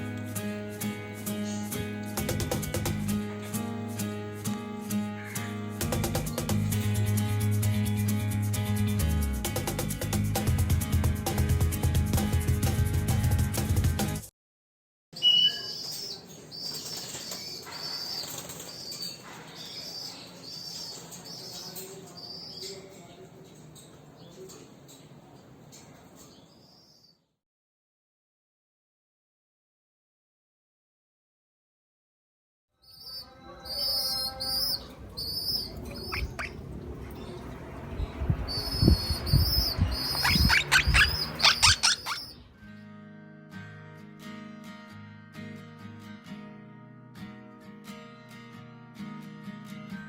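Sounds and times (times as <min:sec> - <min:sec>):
parakeet chick begging calls: 0:32.9 - 0:42.5.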